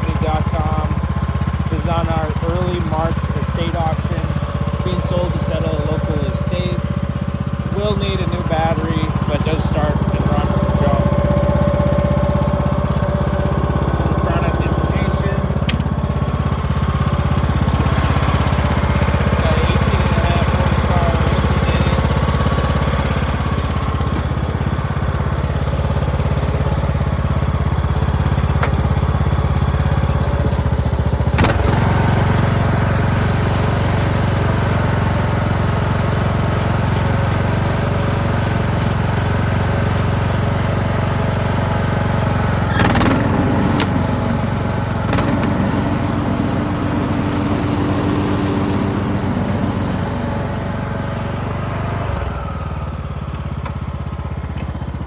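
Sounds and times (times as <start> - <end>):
lawn tractor engine running: 0.0 - 55.0
sharp clicks: 15.6 - 16.0.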